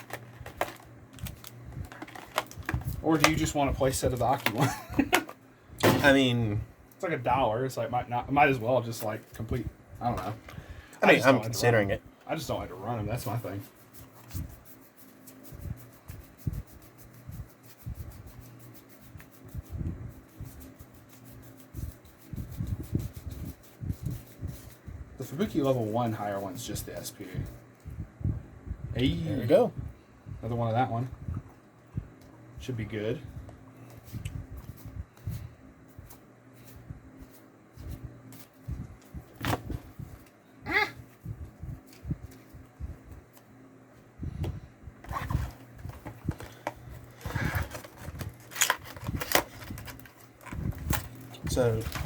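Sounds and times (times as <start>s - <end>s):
trading cards rustling: 0.0s - 5.4s, 45.0s - 52.0s
cards rubbing and sliding: 13.1s - 26.7s, 45.0s - 52.0s.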